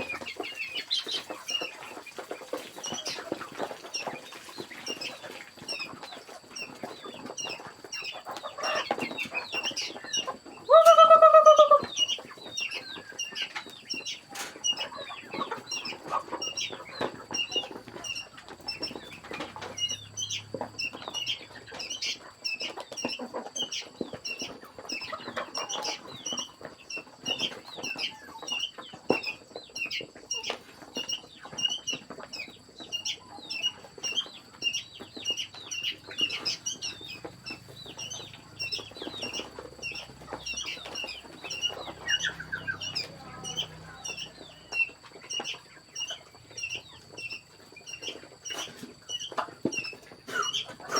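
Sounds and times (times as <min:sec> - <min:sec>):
chicken squawk: 0:00.0 - 0:32.0, 0:32.9 - 0:50.9
chicks peeping: 0:00.0 - 0:50.9.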